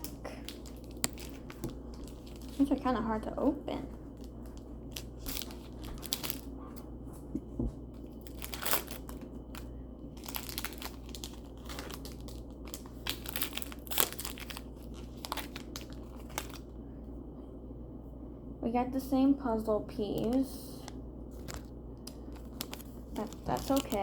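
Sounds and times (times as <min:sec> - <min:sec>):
card pack wrapper crinkling: 0:00.0 - 0:02.9, 0:04.1 - 0:06.5, 0:08.0 - 0:16.7, 0:21.3 - 0:24.0.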